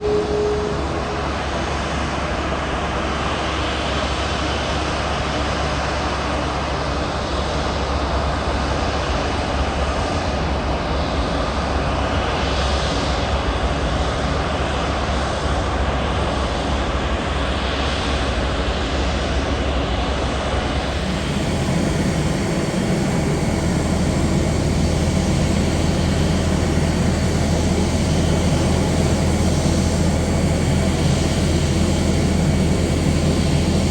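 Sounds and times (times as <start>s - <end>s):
jet engines running: 20.7s - 33.9s.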